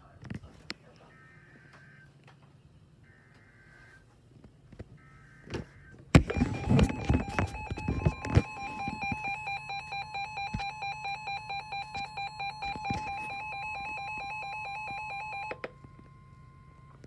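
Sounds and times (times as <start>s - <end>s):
two-tone electronic alert tone: 6.2s - 17.0s.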